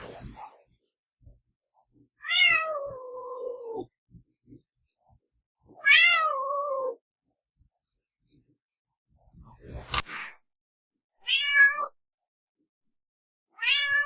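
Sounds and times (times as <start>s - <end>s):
cat meowing: 2.2s - 3.9s, 5.7s - 7.0s, 11.2s - 12.0s, 13.6s - 14.0s.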